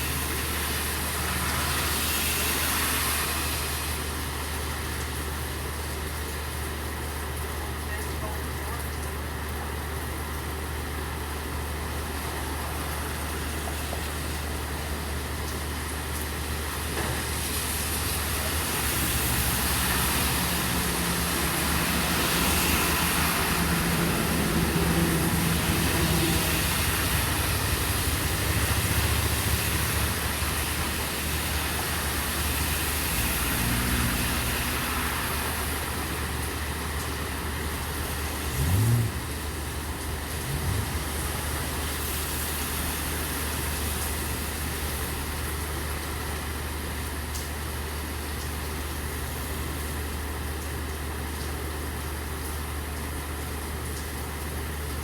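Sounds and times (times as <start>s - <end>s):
low engine hum: 0.0s - 55.0s
steady rain: 0.0s - 55.0s
tyres hissing through water: 16.2s - 50.1s.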